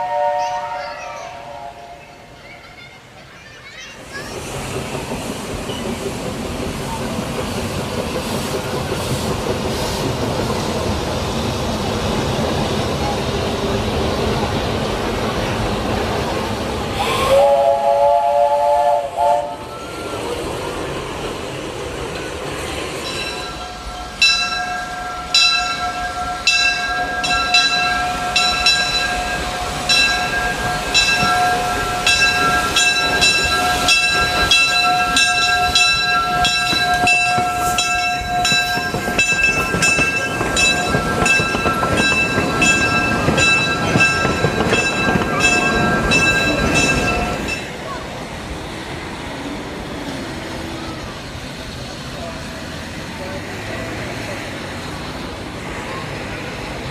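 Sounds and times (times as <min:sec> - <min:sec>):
train whistle: 0:00.0 - 0:02.2, 0:16.9 - 0:20.2.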